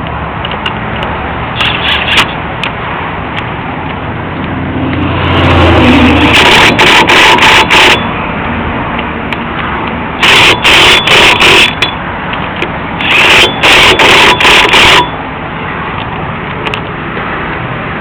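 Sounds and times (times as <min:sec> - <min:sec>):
steady background hum: 0:00.0 - 0:18.0
impact wrench bursts: 0:01.6 - 0:02.4, 0:06.1 - 0:08.1, 0:10.2 - 0:12.0, 0:13.0 - 0:15.2.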